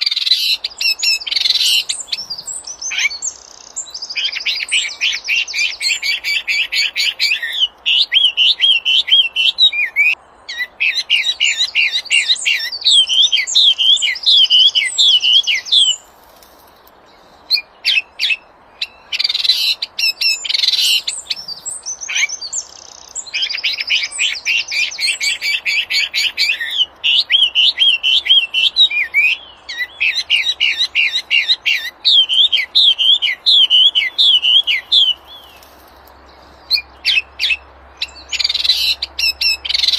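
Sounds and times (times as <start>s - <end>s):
songbird singing trills and whistles: 0.0s - 16.1s, 17.2s - 35.7s, 36.4s - 39.9s
short rustle: 16.0s - 17.5s, 35.3s - 36.6s.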